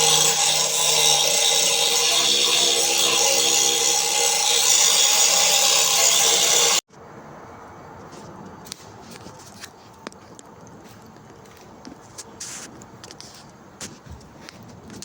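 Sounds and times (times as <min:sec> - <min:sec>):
power tool running: 0:00.0 - 0:06.8.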